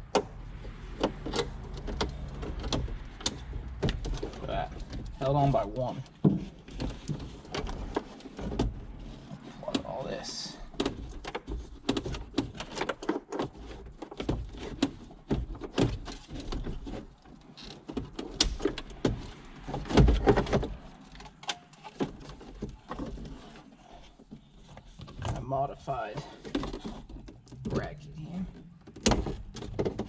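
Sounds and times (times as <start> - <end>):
clatter of knocks: 28.6 - 30.0.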